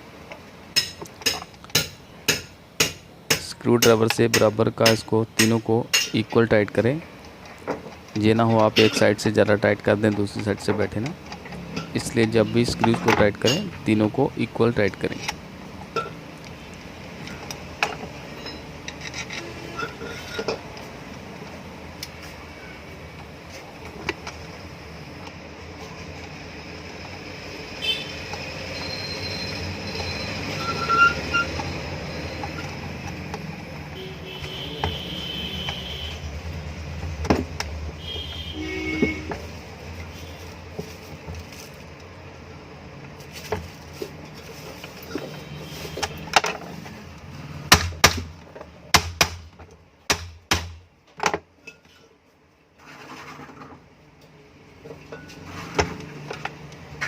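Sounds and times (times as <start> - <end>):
metal parts knocking and clicking: 0.8 - 6.5
short squeaks: 28.7 - 32.8.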